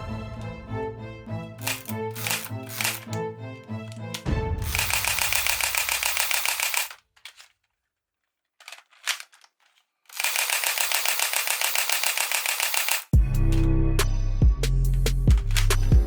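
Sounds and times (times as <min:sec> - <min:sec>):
toy gun firing rapid bursts: 0:01.6 - 0:03.1, 0:04.6 - 0:07.0, 0:10.1 - 0:13.2
mechanical clicks: 0:01.6 - 0:03.2, 0:03.8 - 0:07.5, 0:10.1 - 0:13.7.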